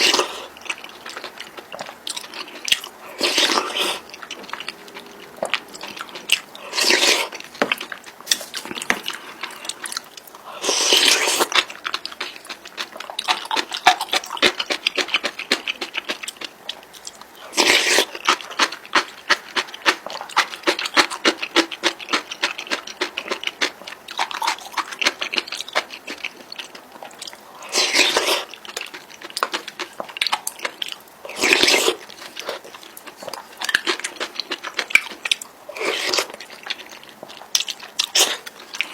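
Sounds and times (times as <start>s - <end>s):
wet chewing: 0.0s - 38.9s
noodle slurps: 2.4s - 7.4s, 10.5s - 11.6s, 17.5s - 18.1s, 27.6s - 28.5s, 31.3s - 34.0s.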